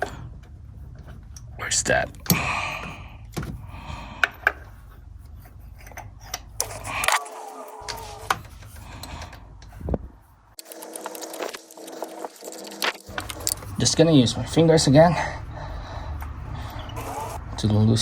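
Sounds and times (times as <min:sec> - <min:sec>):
low steady hum: 0:13.0 - 0:18.0.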